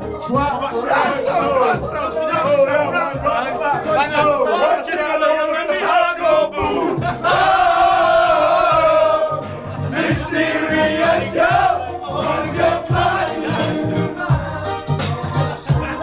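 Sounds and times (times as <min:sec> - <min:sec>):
pop backing track: 0:00.0 - 0:04.5, 0:06.6 - 0:16.0
men singing together: 0:00.0 - 0:16.0.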